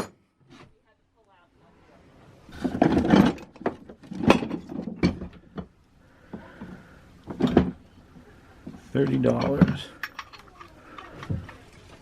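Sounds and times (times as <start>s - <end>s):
hand tools clicking and clunking: 2.5s - 7.9s, 8.6s - 12.0s.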